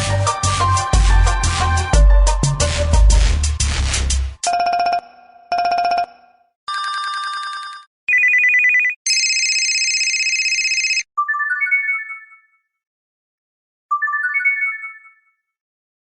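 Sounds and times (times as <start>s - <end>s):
phone ringtones: 4.4s - 12.5s, 13.9s - 15.4s.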